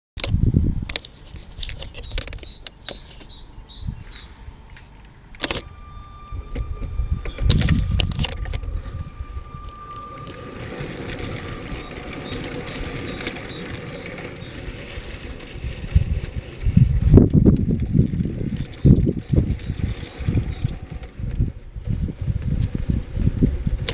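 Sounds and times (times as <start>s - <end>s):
plastic train clicks and knocks: 0.2s - 3.4s
toy train motor whine: 0.2s - 23.9s
heavy low bump: 3.5s - 12.9s.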